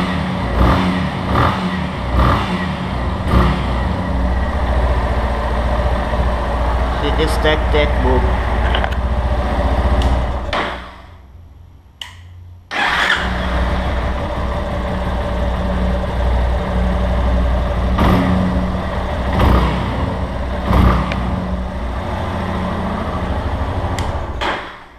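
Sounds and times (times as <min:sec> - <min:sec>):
motorcycle engine running: 0:00.0 - 0:10.6, 0:12.8 - 0:24.4
click: 0:12.0 - 0:12.4
engine ticking: 0:12.8 - 0:24.8.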